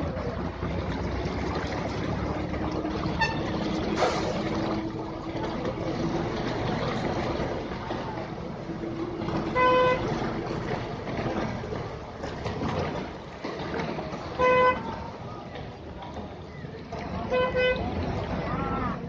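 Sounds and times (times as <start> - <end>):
traffic noise with engine hum: 0.0 - 19.0
loud vehicle horn honking: 3.1 - 3.8, 9.4 - 10.2, 14.4 - 15.0, 17.3 - 17.9.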